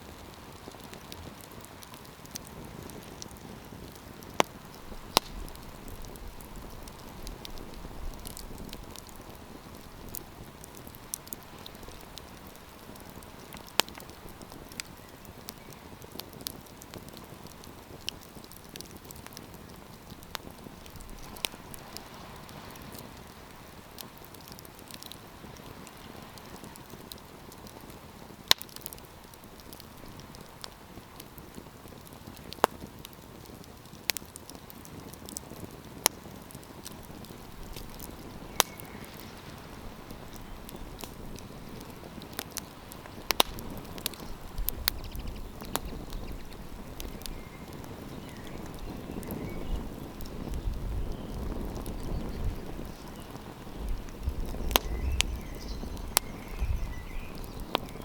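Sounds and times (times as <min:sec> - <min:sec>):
campfire crackling and popping: 0:00.0 - 0:58.0.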